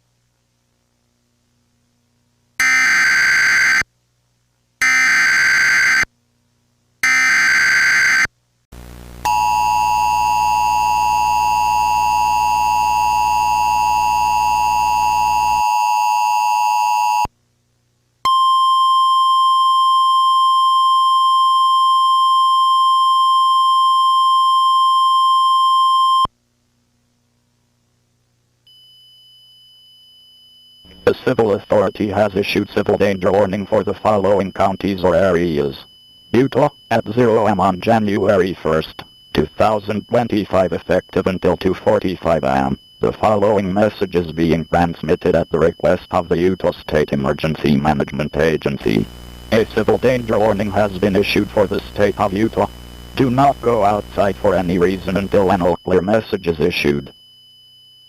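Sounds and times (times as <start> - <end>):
steady warning tone: 2.6 - 3.8, 7.0 - 8.3, 9.3 - 17.3, 28.7 - 58.0
low buzz: 8.8 - 15.6, 48.8 - 55.7
buzzy data bursts: 30.9 - 57.1.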